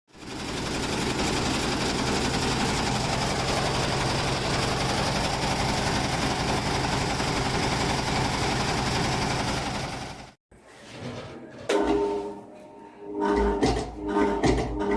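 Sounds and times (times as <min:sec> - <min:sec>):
air conditioner rattling: 0:00.2 - 0:10.3.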